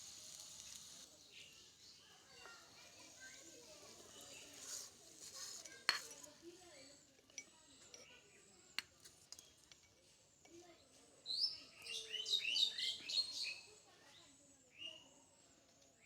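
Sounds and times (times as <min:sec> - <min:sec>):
small birds chirping: 0:11.2 - 0:15.1.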